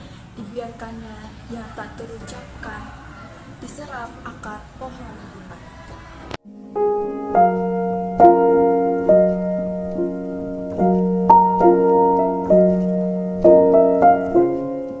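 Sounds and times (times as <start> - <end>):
slow gentle piano piece: 6.4 - 15.0.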